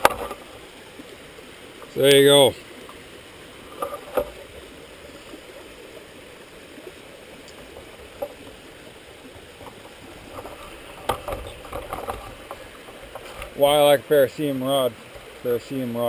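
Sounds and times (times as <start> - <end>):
stream of flowing water: 0.0 - 16.0
light handling knocks and clicks: 9.6 - 13.6.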